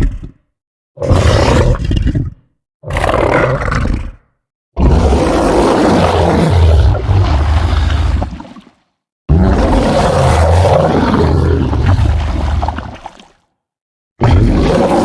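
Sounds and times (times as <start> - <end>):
deep creature roars: 1.0 - 2.2, 2.8 - 4.2, 4.8 - 8.3, 9.3 - 12.8, 14.2 - 15.0.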